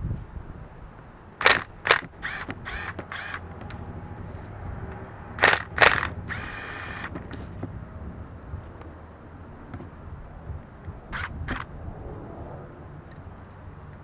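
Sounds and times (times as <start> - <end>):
impact wrench bursts: 1.4 - 3.8, 5.3 - 7.4, 11.1 - 11.7.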